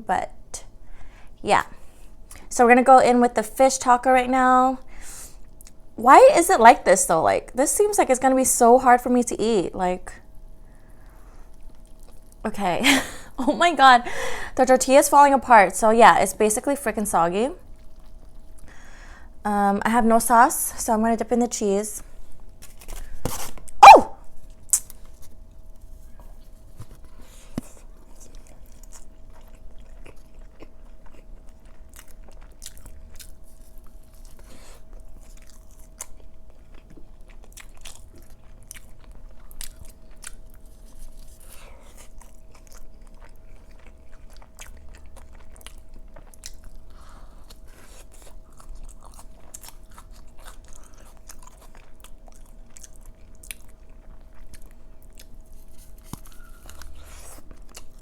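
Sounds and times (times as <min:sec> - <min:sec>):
close chewing and biting: 0:11.0 - 0:12.4, 0:17.6 - 0:18.7, 0:24.4 - 0:58.0.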